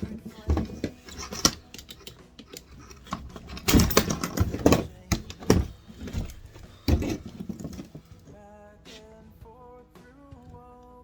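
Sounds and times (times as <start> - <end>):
hand tools and parts clattering: 0.0 - 8.4.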